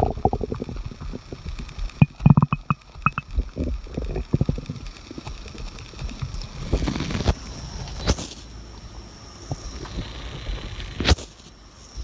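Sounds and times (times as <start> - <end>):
stomach growling: 0.0 - 8.2.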